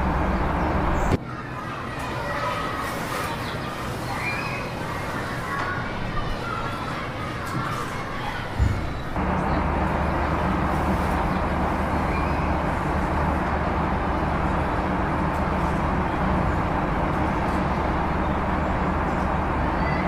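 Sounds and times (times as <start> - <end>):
vehicle engine running: 0.0 - 1.2, 9.2 - 20.0
street noise: 0.0 - 20.0.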